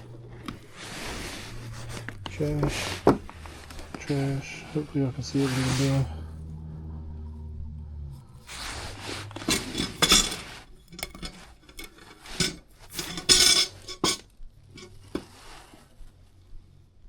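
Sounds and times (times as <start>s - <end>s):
low hum: 0.0s - 15.2s
metal tools clinking and rattling: 8.5s - 15.3s.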